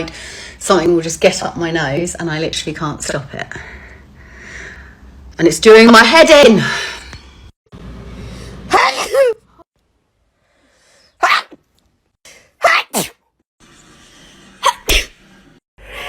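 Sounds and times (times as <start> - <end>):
woman sneezing: 8.7 - 9.4, 11.2 - 11.6, 12.6 - 13.2, 14.6 - 15.1.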